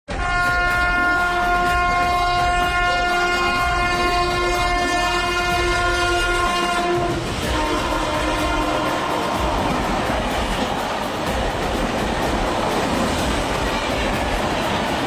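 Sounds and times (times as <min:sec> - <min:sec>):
locomotive air horn chord: 0:00.1 - 0:12.6
passing train rushing and clatter: 0:00.1 - 0:15.0.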